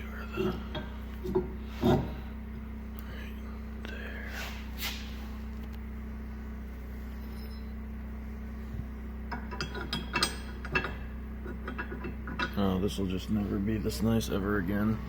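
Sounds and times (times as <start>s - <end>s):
steady low hum: 0.0s - 15.0s
metal parts clinking: 9.3s - 12.7s.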